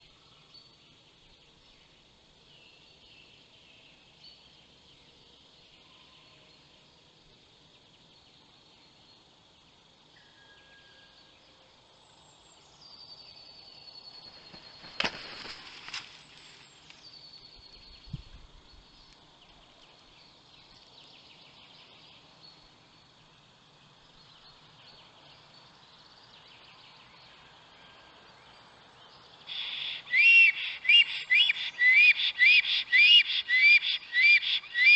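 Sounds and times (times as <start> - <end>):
distant birds chirping: 13.4 - 27.4, 28.4 - 34.9.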